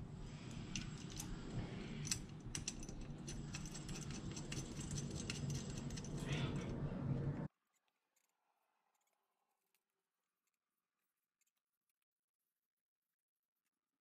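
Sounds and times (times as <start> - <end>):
low steady hum: 0.0 - 7.5
metal parts clinking: 0.5 - 6.4.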